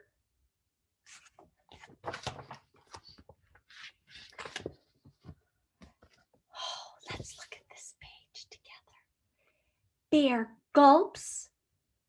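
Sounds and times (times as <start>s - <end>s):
book pages turning: 1.0s - 6.4s.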